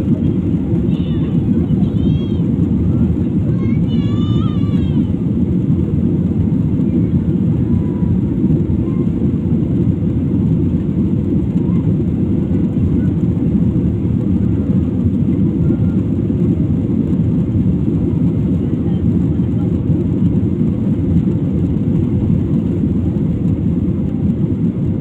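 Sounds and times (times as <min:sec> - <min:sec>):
rushing air: 0:00.0 - 0:19.2
airliner engines rumbling: 0:00.0 - 0:25.0.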